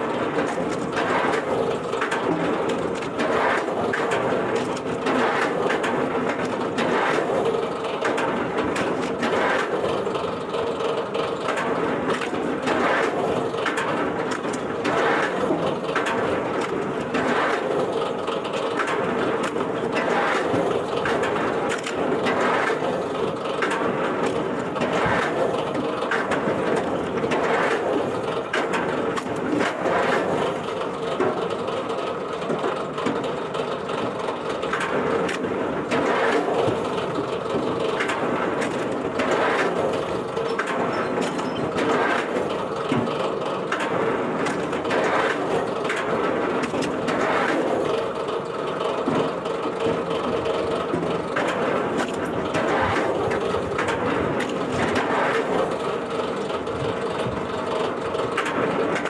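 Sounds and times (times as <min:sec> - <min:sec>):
wood-processing machinery humming: 0:00.0 - 0:59.0
knocks and cracks: 0:11.4 - 0:30.2, 0:34.1 - 0:48.0, 0:49.0 - 0:59.0.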